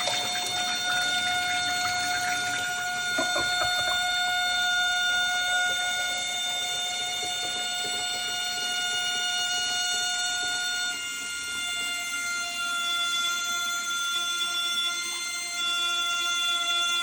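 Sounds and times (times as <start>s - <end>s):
water running in toilet bowl: 0.0s - 9.2s
toilet high-pitched whistle: 0.0s - 17.0s.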